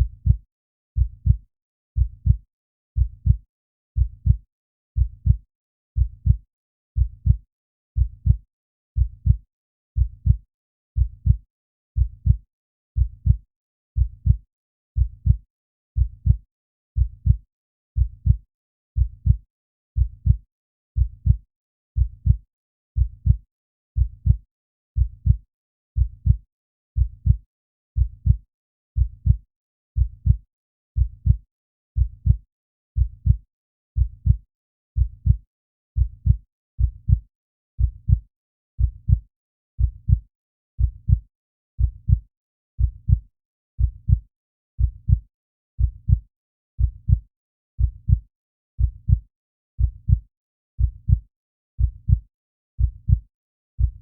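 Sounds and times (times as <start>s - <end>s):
heartbeat double thumps: 0.0s - 0.4s, 1.0s - 1.4s, 2.0s - 2.4s, 3.0s - 3.4s, 5.0s - 5.4s, 7.0s - 7.4s, 8.0s - 8.4s, 23.0s - 23.4s, 25.0s - 25.4s, 26.0s - 26.4s, 27.0s - 27.4s, 28.0s - 28.4s, 29.0s - 29.4s, 30.0s - 30.4s, 31.0s - 31.4s, 32.0s - 32.4s, 33.0s - 33.4s, 34.0s - 34.4s, 35.0s - 35.4s, 36.0s - 37.2s, 37.8s - 38.2s, 38.8s - 39.2s, 39.8s - 40.2s, 40.8s - 41.2s, 41.8s - 42.2s, 42.8s - 43.2s, 43.8s - 44.2s, 44.8s - 45.2s, 45.8s - 46.2s, 46.8s - 47.2s, 47.8s - 48.2s, 48.8s - 49.2s, 49.8s - 50.2s, 50.8s - 51.2s, 51.8s - 52.2s, 52.8s - 53.2s, 53.8s - 54.0s.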